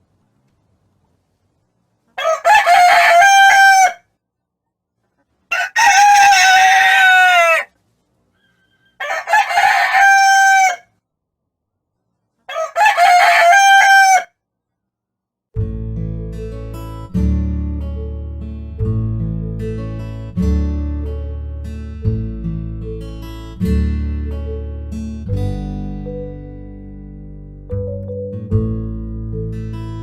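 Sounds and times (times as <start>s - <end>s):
rooster crowing: 2.2s - 4.0s, 5.5s - 7.7s, 8.4s - 10.9s, 12.5s - 14.3s.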